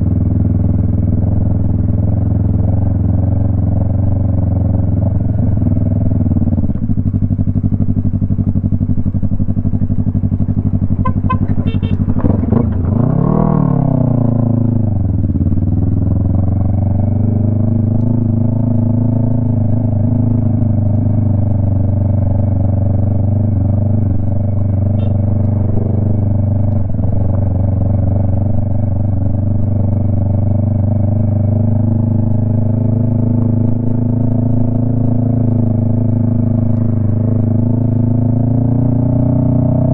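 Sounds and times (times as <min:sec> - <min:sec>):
loud motorcycle engine revving: 0:09.7 - 0:15.0, 0:22.1 - 0:29.0, 0:31.1 - 0:39.9.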